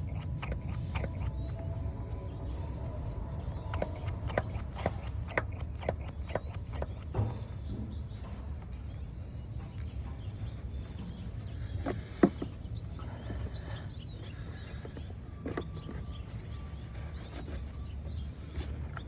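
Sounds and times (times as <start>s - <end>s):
oil dripping ticks: 0.0s - 1.4s, 3.6s - 7.2s
low steady hum: 0.0s - 19.0s.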